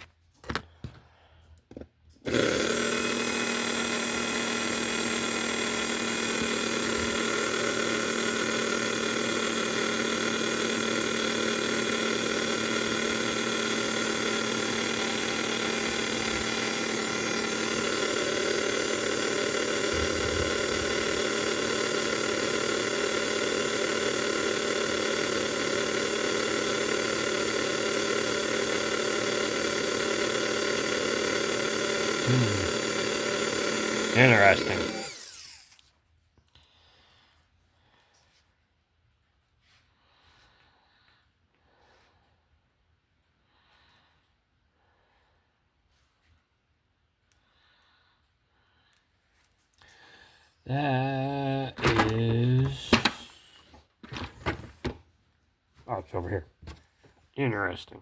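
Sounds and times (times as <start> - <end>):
small electric motor whine: 2.3 - 35.9.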